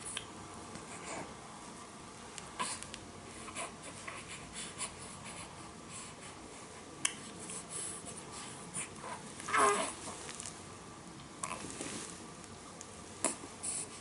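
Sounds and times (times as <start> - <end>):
soft scratching and rustling: 5.1 - 10.7, 11.5 - 12.5.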